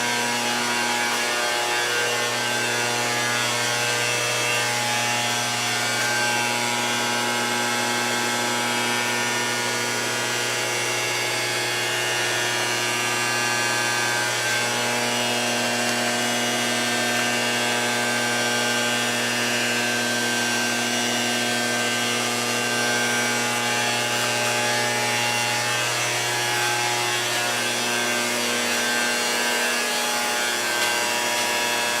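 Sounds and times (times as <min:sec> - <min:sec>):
power tool humming: 0:00.0 - 0:32.0.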